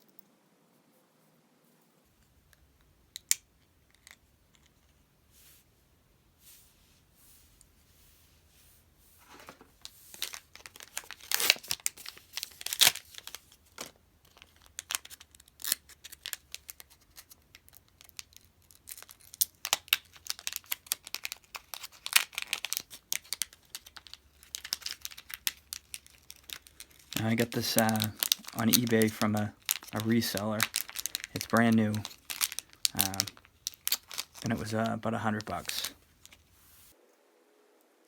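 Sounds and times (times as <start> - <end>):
plastic packaging crinkling: 9.2 - 37.0.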